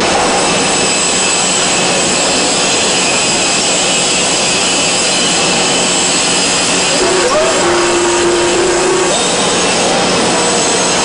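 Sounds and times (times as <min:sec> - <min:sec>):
machine running: 0:04.0 - 0:11.0
faint steady tones: 0:06.9 - 0:09.5.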